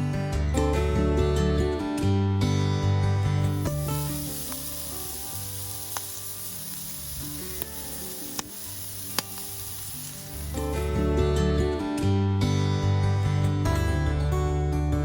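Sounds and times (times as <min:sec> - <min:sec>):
food sizzling in a pan: 0:03.4 - 0:11.2.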